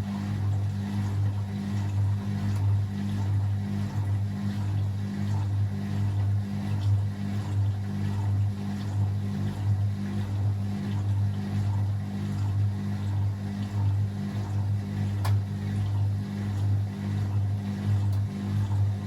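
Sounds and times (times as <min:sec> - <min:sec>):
washing machine motor hum: 0:00.0 - 0:19.0.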